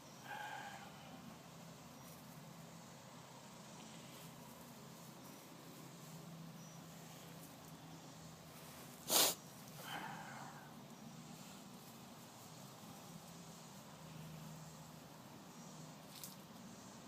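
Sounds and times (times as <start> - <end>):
puppy sneezing: 9.0 - 9.4
puppy snuffling: 9.0 - 9.4.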